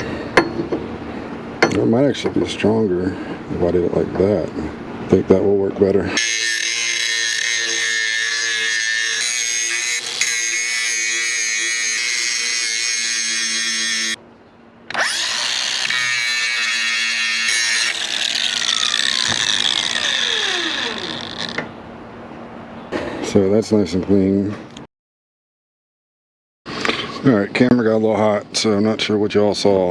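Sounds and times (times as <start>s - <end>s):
angle grinder whining: 6.1s - 14.2s, 14.9s - 21.8s.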